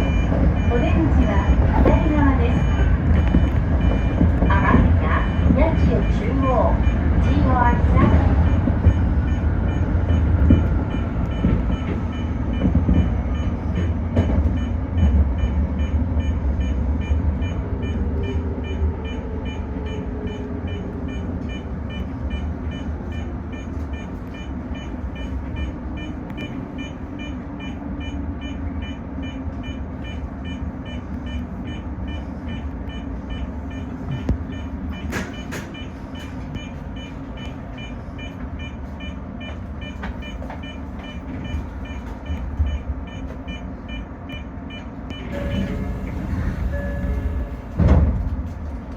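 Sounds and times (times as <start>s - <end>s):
train rumble: 0.0s - 48.9s
electric train motor whine: 45.3s - 48.0s.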